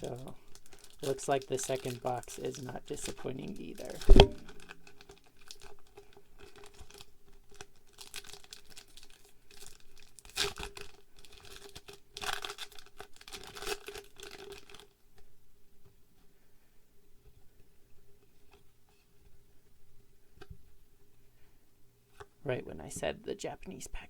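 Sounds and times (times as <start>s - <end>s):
foil wrapper crinkling: 0.0s - 15.0s
foil wrapper tearing: 0.0s - 15.0s.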